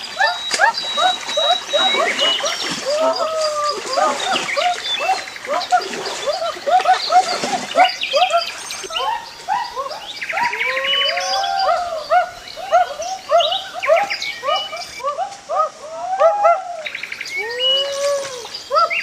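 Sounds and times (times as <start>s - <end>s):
birds chirping and calling: 0.0s - 19.0s.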